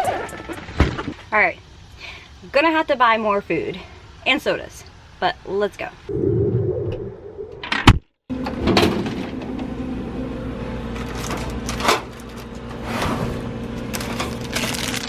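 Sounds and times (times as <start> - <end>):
machine hum: 8.3 - 15.0.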